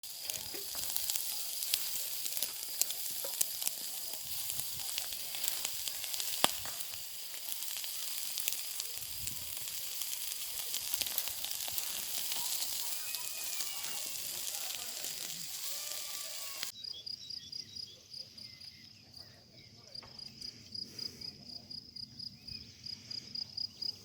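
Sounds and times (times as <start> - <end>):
fire crackles and pops: 0.0 - 16.7
kebabs sizzling over fire: 0.0 - 16.8.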